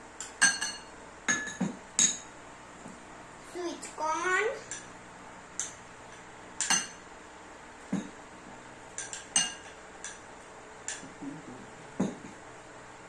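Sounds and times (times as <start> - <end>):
utensils clinking against dishes: 0.2 - 2.3, 5.6 - 7.0, 9.0 - 10.2.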